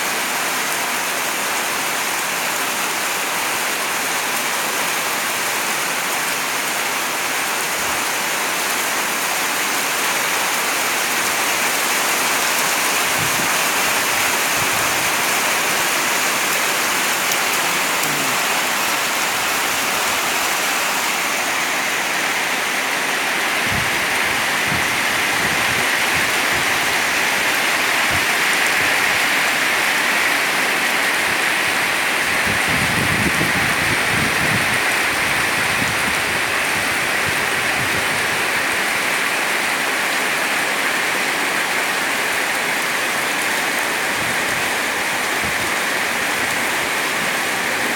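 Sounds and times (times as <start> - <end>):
heavy rain pouring: 0.0 - 47.9.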